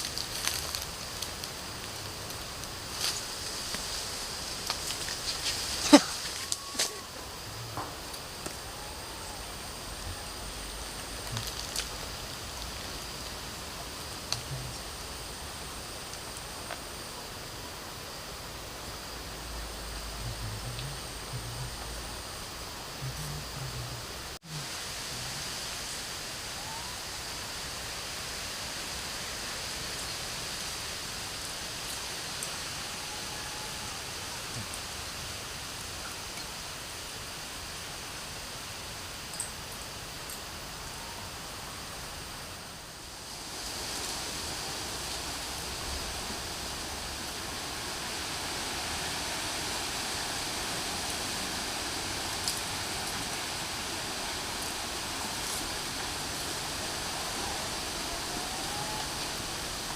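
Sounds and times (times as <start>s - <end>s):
heavy rain falling: 0.0s - 59.9s
steady hiss: 0.0s - 59.9s
faint ticks: 14.3s - 14.8s.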